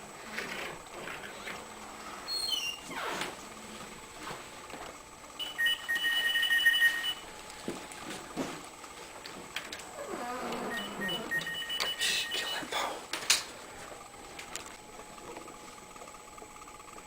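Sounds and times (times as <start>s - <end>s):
door alarm two-pitch tone: 5.4s - 7.2s, 10.6s - 12.7s.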